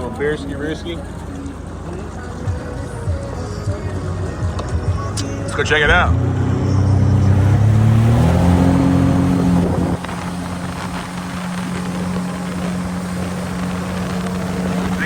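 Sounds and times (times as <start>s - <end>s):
jet ski engine revving: 0.0s - 15.0s
constant hiss: 7.1s - 15.0s.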